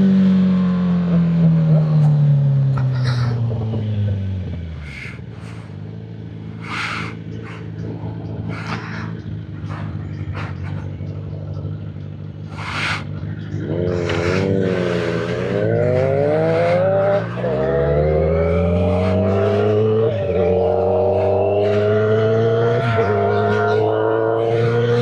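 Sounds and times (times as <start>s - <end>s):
motorcycle engine revving: 0.0s - 25.0s
motorcycle engine idling: 0.2s - 18.0s
brief hissing bursts: 12.5s - 13.0s.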